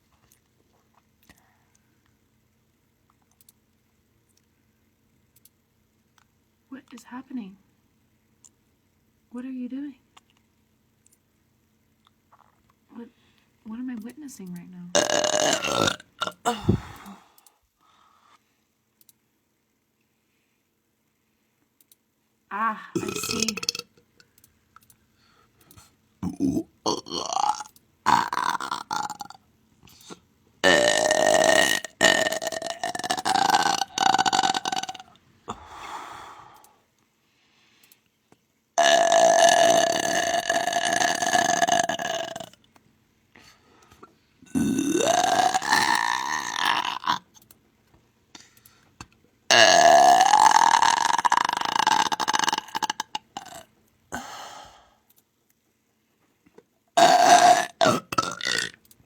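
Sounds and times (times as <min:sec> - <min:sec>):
person belching: 0:15.0 - 0:17.2, 0:22.9 - 0:24.1, 0:26.2 - 0:29.4, 0:30.6 - 0:35.7, 0:38.8 - 0:42.6, 0:44.5 - 0:47.3, 0:49.5 - 0:54.3, 0:57.0 - 0:58.8.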